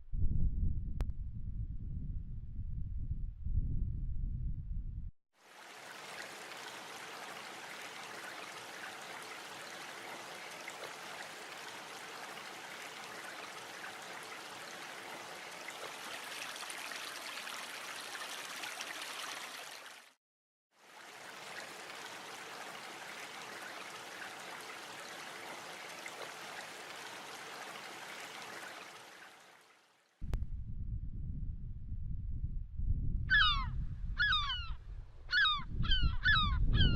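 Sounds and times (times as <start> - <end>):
stream water rushing: 5.4 - 20.2, 20.8 - 30.0.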